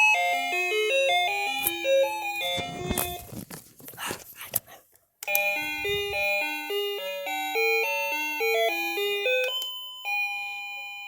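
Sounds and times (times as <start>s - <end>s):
electronic doorbell chime melody: 0.0s - 2.8s, 5.3s - 11.0s.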